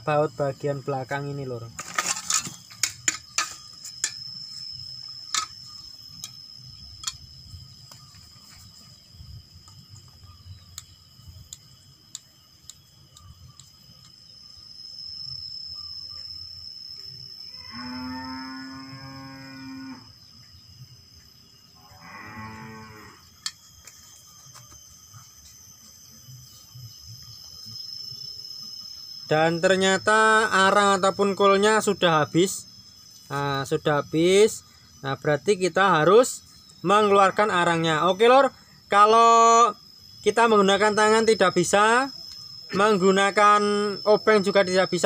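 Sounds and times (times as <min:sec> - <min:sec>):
high insect trill: 0:00.0 - 0:45.0
tools clicking and tapping: 0:05.3 - 0:05.6, 0:07.0 - 0:07.3.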